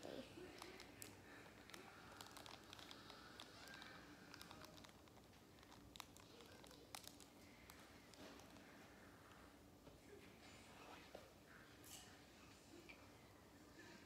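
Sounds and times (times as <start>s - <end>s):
packaging crinkling: 0.4s - 8.6s.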